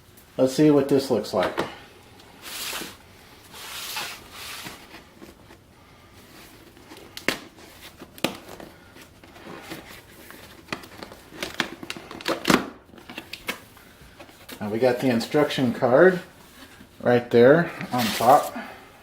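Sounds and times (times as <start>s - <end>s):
sharp snaps and knocks: 7.1s - 8.6s
cardboard flaps and paper rustling: 17.7s - 18.6s
cardboard tearing: 17.8s - 18.6s.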